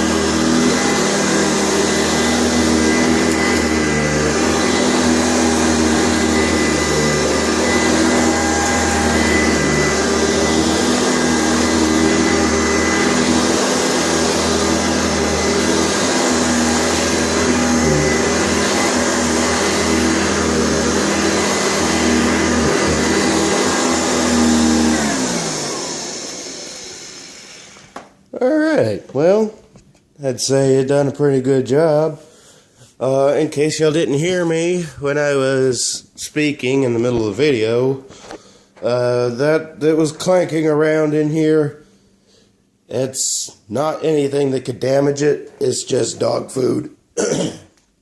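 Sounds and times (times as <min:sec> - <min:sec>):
vacuum motor winding down: 0:00.0 - 0:28.0
vacuum cleaner running: 0:00.0 - 0:28.2.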